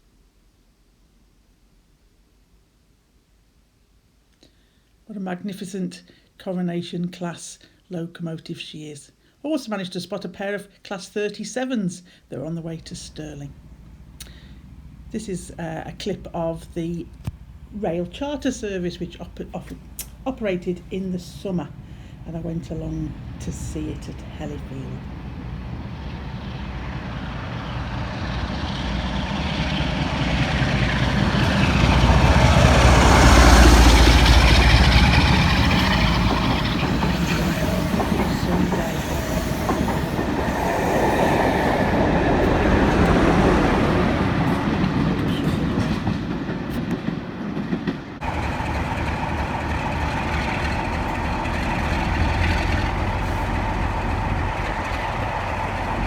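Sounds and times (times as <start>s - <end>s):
passenger train passing: 12.4s - 56.0s.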